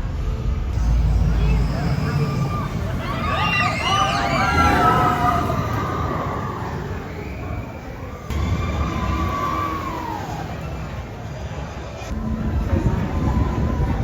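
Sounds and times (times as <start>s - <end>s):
roller coaster train rumbling: 0.0s - 14.0s
high whining tone: 0.8s - 11.8s.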